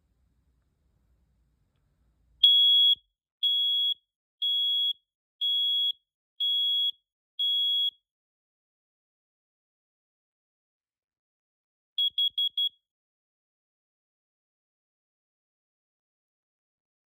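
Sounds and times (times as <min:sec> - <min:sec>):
high-pitched alarm beeps: 0:12.0 - 0:12.8.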